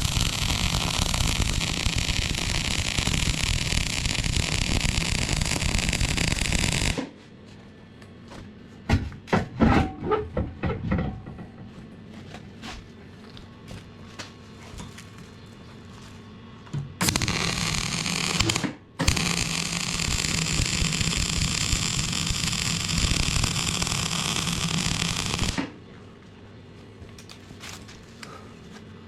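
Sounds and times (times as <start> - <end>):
electric arc welding crackle: 0.0 - 7.1, 17.0 - 25.8.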